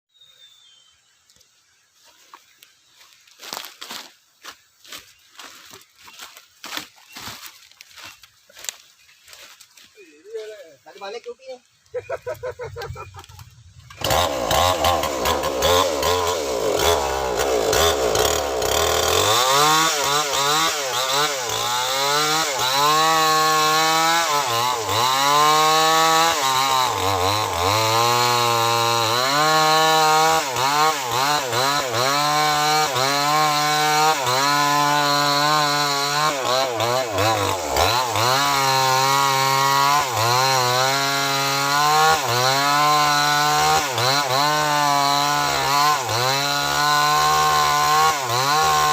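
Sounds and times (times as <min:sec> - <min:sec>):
chainsaw cutting wood: 0:12.8 - 0:48.9.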